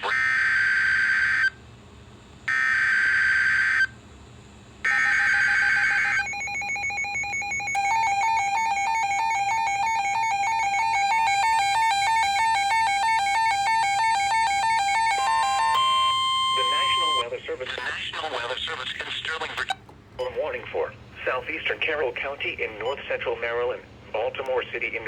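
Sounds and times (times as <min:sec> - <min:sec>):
warbling electronic alert tone: 0:05.7 - 0:17.2
buzzy digital data tones: 0:12.4 - 0:17.3.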